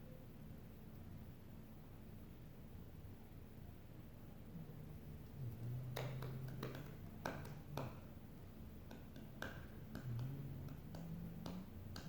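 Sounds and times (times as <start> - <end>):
faint low drone: 4.4 - 8.3, 9.8 - 12.0.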